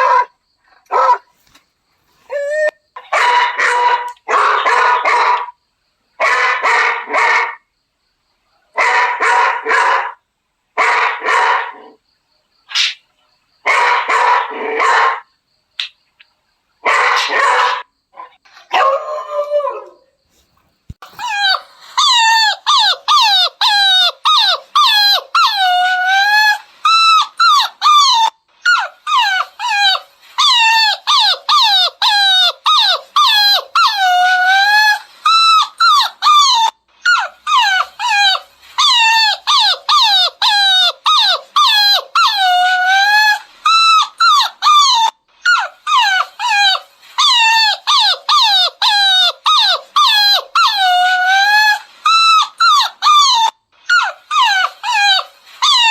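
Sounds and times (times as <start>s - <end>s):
puppy whining and yelping: 2.2s - 2.8s, 21.0s - 55.9s.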